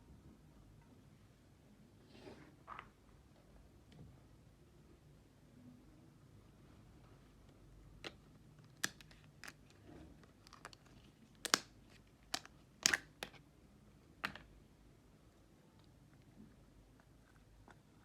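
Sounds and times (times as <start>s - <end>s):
slime clicking and popping: 11.4s - 13.3s.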